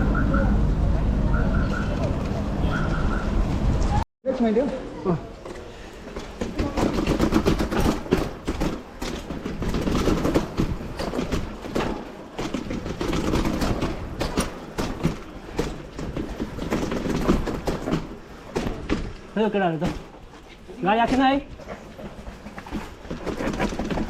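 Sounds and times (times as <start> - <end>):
mountain bike rattling: 5.4 - 24.0.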